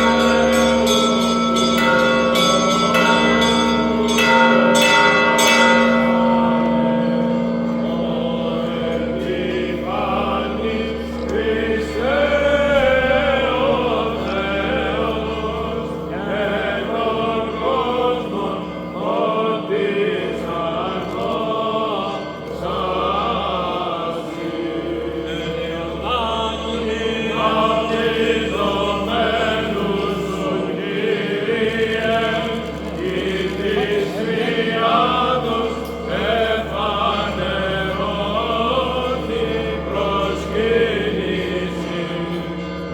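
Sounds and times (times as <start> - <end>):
group of voices chanting: 27.0 - 42.3.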